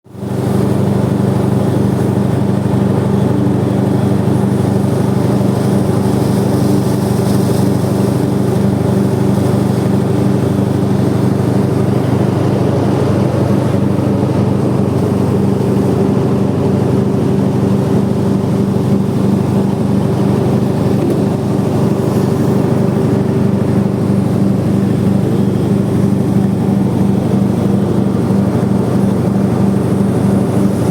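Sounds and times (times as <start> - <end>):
digging machine engine running: 7.9 - 30.9.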